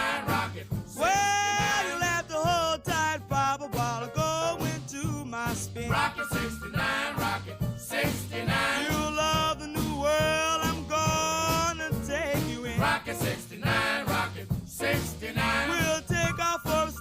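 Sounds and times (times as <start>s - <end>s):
upbeat ska song with bass beat: 0.0s - 17.0s
man singing: 0.9s - 6.7s, 8.8s - 12.9s, 15.6s - 17.0s.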